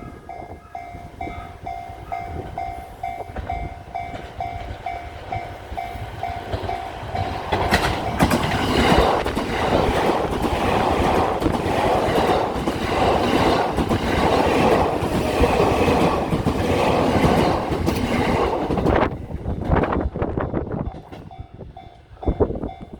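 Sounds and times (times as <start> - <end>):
level-crossing bell ringing: 0.0 - 7.2
train wheels clattering on rails: 0.0 - 22.9.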